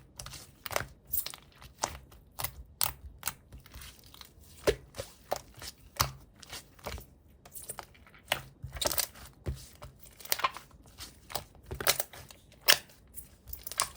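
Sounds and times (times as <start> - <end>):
slime squishing and popping: 10.1 - 13.9.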